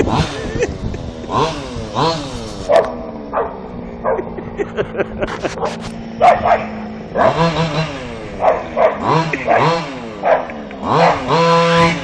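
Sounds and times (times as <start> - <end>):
dog barking and yipping: 2.6 - 4.4, 5.3 - 7.4, 8.4 - 11.4.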